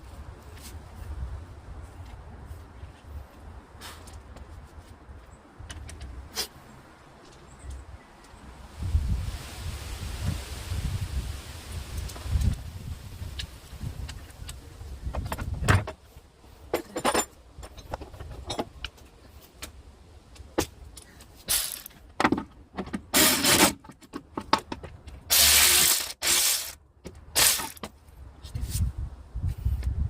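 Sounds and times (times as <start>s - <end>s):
metal tools clinking: 16.7s - 18.6s
rapid ratchet clicking: 25.3s - 26.8s, 27.4s - 27.8s.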